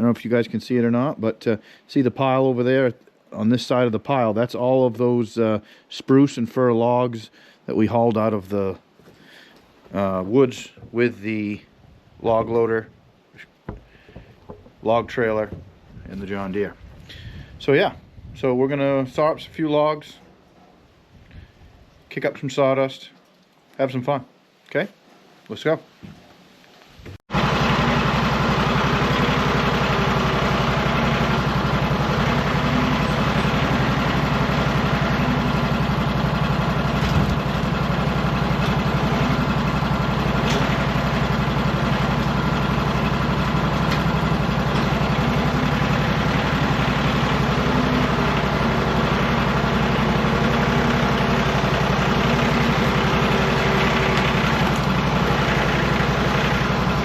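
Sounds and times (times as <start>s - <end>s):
sawmill engine humming: 12.3s - 17.2s, 27.3s - 57.0s
small knock: 13.7s - 14.8s.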